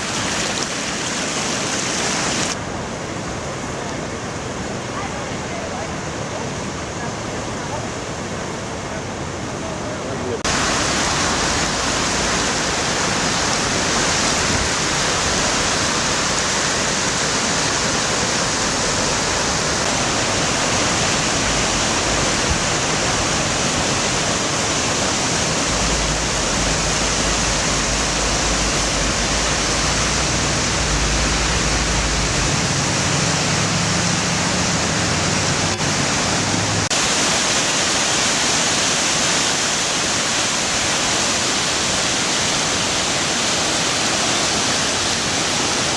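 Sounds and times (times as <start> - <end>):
floodwater rushing through rapids: 0.0 - 45.9
low rumble: 25.5 - 34.9.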